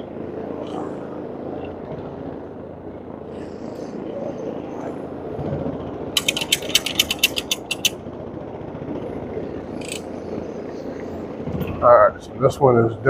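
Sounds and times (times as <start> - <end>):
sharp clicks: 6.2 - 8.0.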